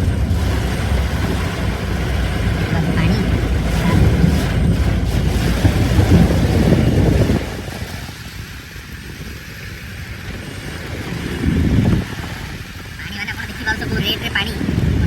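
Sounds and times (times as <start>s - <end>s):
vehicles on flooded street: 0.0s - 15.0s
wind rumbling on microphone: 0.0s - 15.0s.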